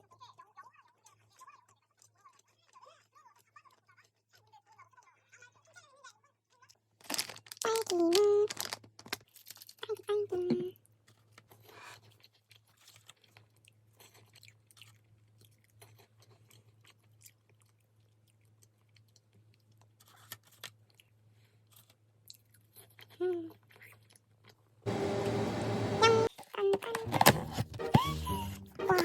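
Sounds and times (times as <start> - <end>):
chewing food: 0.2 - 5.4, 9.2 - 24.8
low steady hum: 24.9 - 26.3.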